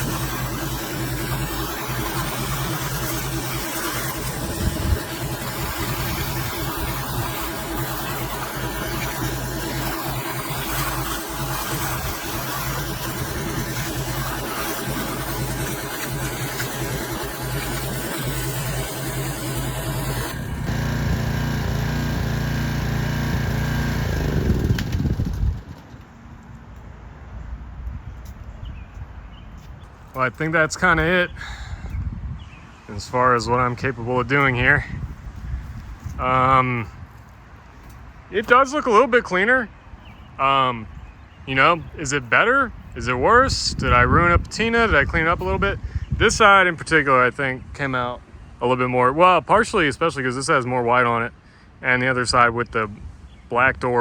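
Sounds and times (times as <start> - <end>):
water spray hiss: 0.0 - 20.7
pressure washer engine drone: 0.0 - 26.2.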